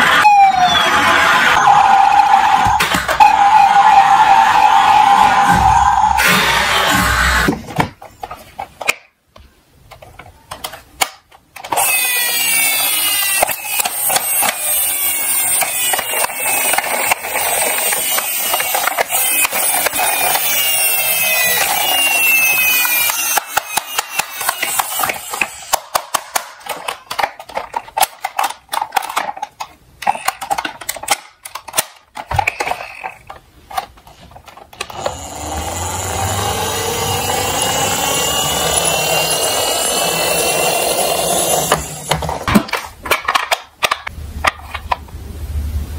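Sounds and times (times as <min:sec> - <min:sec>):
toy cars clicking together: 0:09.9 - 0:45.0
toy cars rattling down slope: 0:11.6 - 0:44.0.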